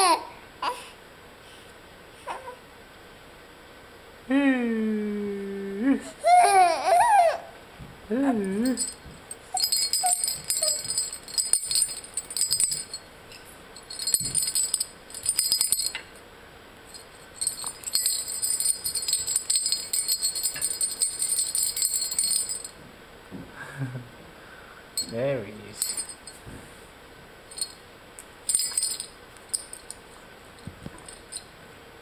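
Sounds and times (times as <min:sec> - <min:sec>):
jingle-bell toy shaken: 0:08.5 - 0:13.1, 0:13.8 - 0:16.1, 0:16.9 - 0:22.8, 0:25.0 - 0:26.4, 0:27.5 - 0:27.8, 0:28.5 - 0:30.0, 0:30.6 - 0:31.5.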